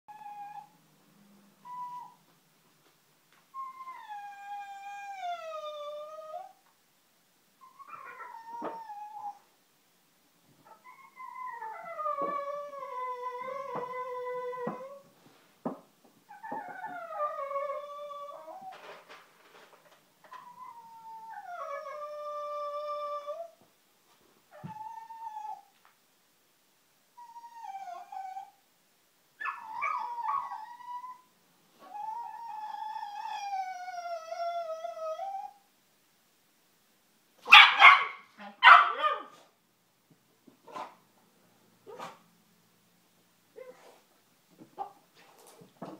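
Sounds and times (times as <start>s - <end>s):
dog whining: 0.1s - 0.8s, 1.6s - 2.2s, 3.5s - 6.6s, 7.6s - 9.4s, 10.6s - 15.1s, 16.3s - 18.9s, 20.2s - 23.6s, 24.5s - 25.7s, 27.2s - 28.6s, 29.4s - 35.7s
dog barking: 37.5s - 39.4s.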